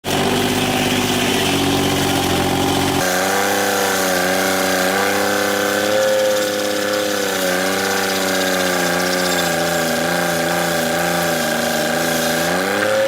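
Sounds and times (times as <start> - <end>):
sawmill machinery humming: 0.0 - 13.0.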